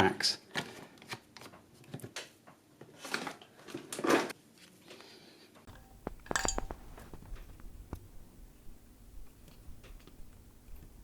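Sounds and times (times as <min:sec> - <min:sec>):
ringing metallic clinks: 0:05.7 - 0:07.2.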